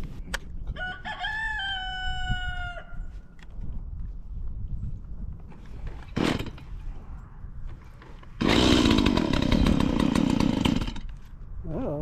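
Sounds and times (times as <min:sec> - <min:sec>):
chainsaw running: 0:06.0 - 0:06.7, 0:08.4 - 0:11.2.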